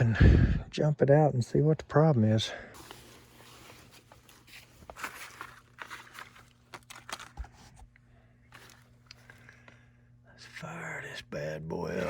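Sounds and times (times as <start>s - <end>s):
low steady hum: 0.0s - 12.0s
rustling and crinkling: 2.8s - 9.7s.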